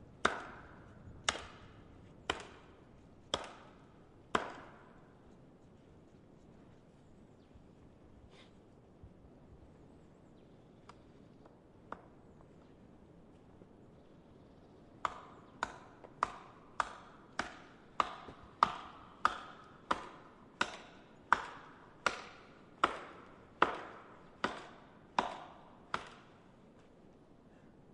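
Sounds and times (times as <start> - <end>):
axe chopping wood: 0.2 - 5.0, 15.0 - 26.4.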